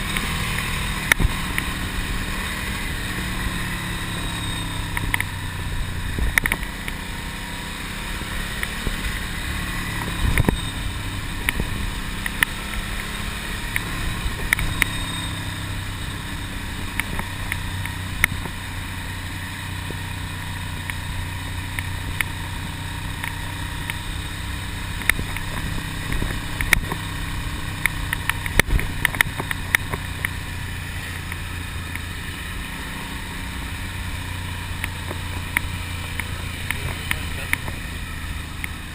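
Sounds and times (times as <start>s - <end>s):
motorcycle engine running: 0.0s - 38.9s
wind noise: 5.7s - 6.5s
sharp clicks: 25.0s - 27.0s.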